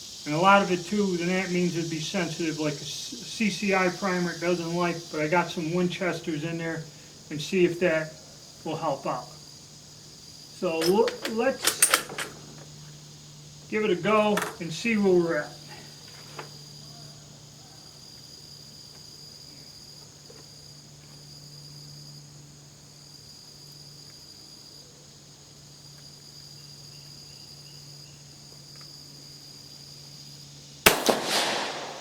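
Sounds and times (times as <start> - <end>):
insects chirring: 0.0 - 32.0
rifle shot echoing: 30.9 - 32.0.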